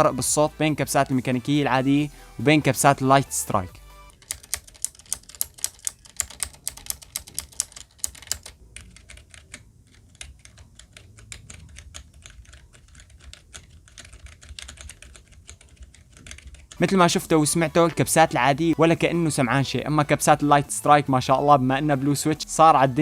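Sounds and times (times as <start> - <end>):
mechanical keyboard key presses: 4.1 - 16.8.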